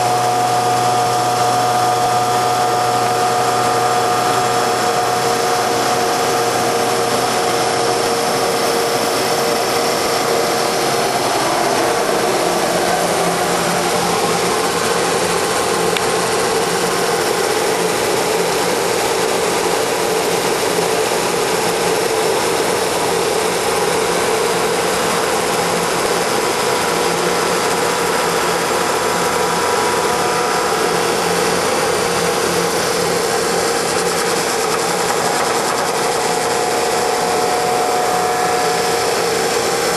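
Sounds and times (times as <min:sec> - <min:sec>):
wood lathe running: 0:00.0 - 0:39.9.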